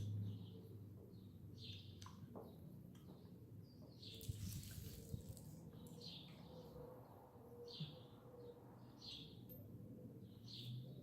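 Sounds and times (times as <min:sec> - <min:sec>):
small bird chirping: 0:00.0 - 0:06.8.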